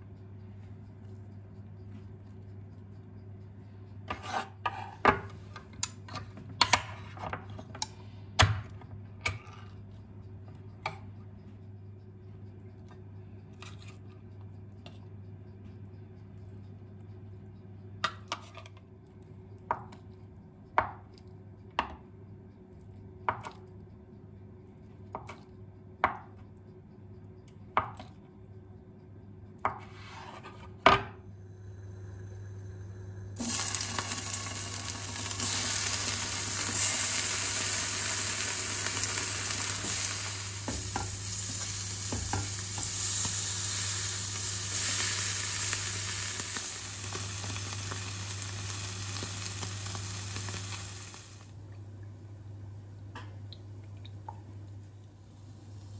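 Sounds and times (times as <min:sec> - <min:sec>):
food sizzling in hot pan: 0:33.4 - 0:51.5.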